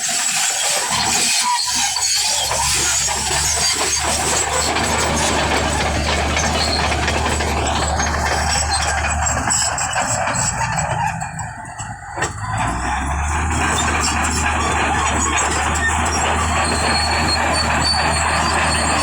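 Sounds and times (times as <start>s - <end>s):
bulldozer diesel engine running: 0.0s - 19.0s.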